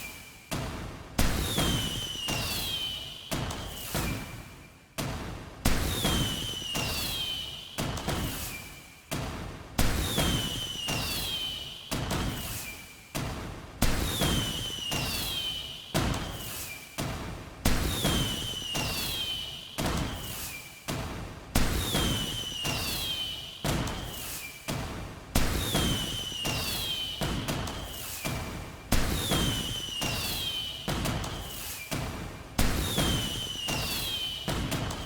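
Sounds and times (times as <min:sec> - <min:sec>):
falling firework whistle: 0:01.3 - 0:04.5, 0:05.9 - 0:08.8, 0:10.0 - 0:12.9, 0:14.0 - 0:17.0, 0:17.7 - 0:20.8, 0:21.6 - 0:24.6, 0:25.4 - 0:35.0
fireworks bangs: 0:28.9 - 0:31.8, 0:32.6 - 0:35.0.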